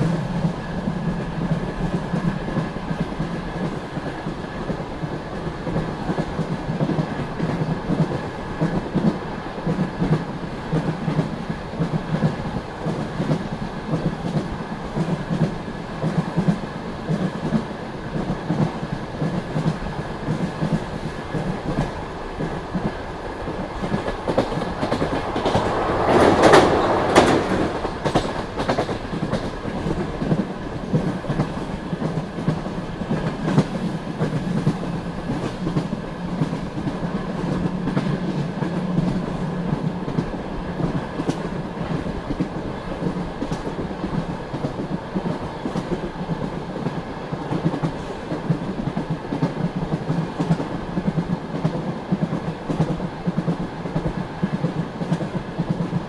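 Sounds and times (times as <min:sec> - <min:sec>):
train wheels clicking over rail joints: 0:01.4 - 0:56.0
rushing swell: 0:23.0 - 0:28.6.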